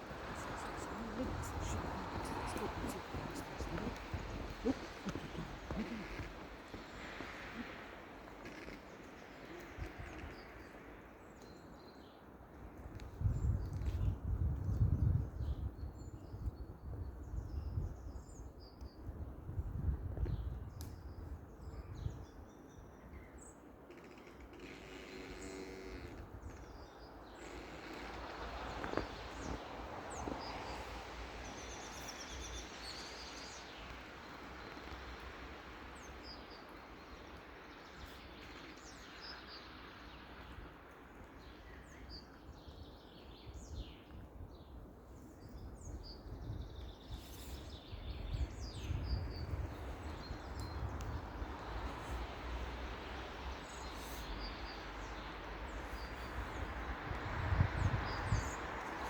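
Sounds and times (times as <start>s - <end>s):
pine tree creaking: 0.0s - 11.0s, 23.9s - 41.3s
small birds chirping: 0.0s - 14.1s, 25.1s - 59.0s
wind: 0.0s - 59.0s.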